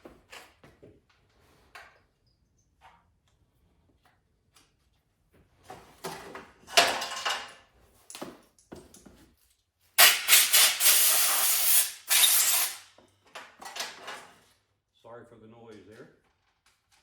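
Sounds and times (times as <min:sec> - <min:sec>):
compressed air hissing from blow gun: 0:10.0 - 0:12.8.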